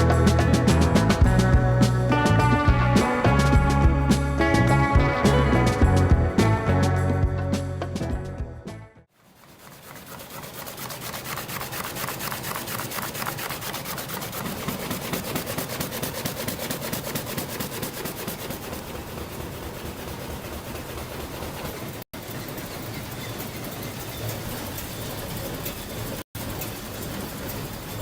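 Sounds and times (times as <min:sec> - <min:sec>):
cutter rasping against wood: 0:09.3 - 0:18.9.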